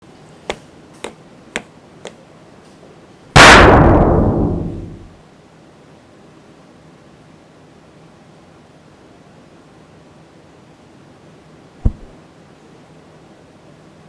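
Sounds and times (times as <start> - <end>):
loud crash: 3.4 - 5.1.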